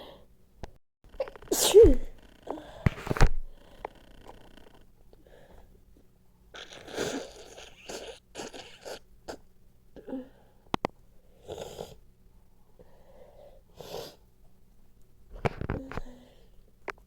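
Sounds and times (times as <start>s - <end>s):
nose sniffing and blowing: 6.6s - 9.4s.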